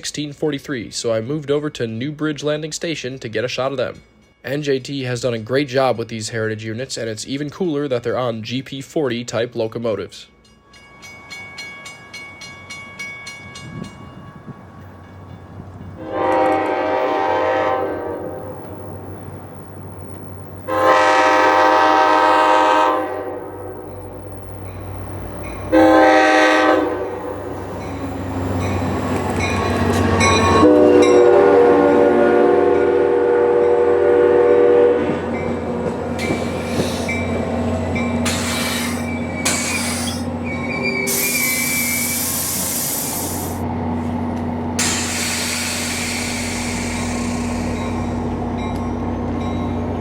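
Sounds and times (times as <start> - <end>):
train engine and rail noise: 0.0 - 50.0
locomotive horn blasts: 16.0 - 18.7, 20.7 - 23.8, 25.7 - 27.4, 30.3 - 35.3
hissing bursts: 36.1 - 37.6, 38.2 - 40.4, 41.0 - 43.6, 44.8 - 48.3.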